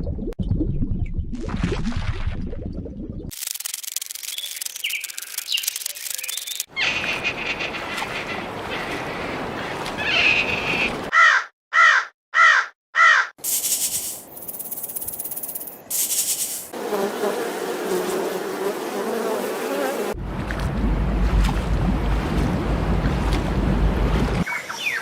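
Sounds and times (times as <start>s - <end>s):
crow cawing: 11.1s - 13.4s.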